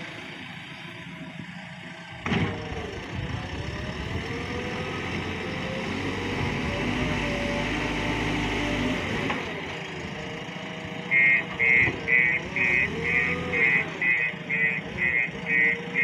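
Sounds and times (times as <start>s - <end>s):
heavy diesel engine running: 0.0s - 16.0s
reversing alarm beeping: 11.0s - 16.0s.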